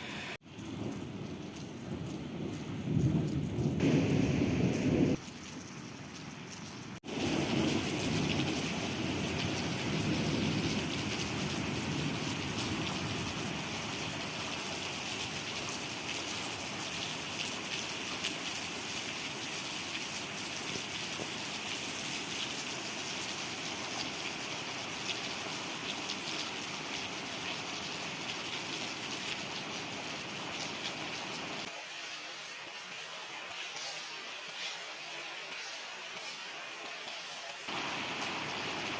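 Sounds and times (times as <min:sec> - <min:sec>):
heavy rain pouring: 0:00.0 - 0:38.9
thunder rumble: 0:00.5 - 0:05.2, 0:07.1 - 0:13.4.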